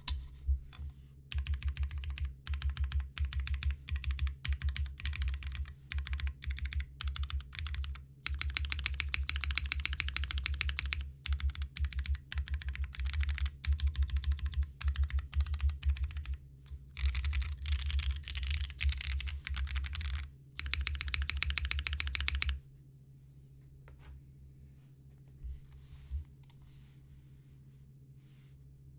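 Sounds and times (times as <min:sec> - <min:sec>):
typing on mechanical keyboard: 0:01.3 - 0:16.4, 0:17.0 - 0:22.6.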